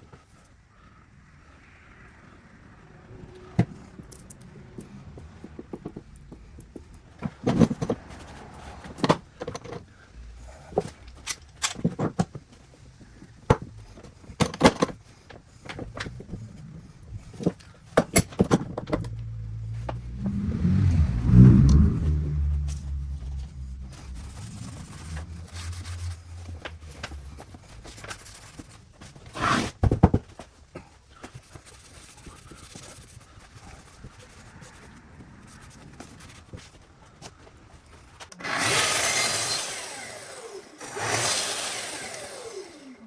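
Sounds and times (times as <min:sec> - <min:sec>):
objects being handled and moved: 0:03.3 - 0:38.7
low motor hum: 0:15.4 - 0:28.4.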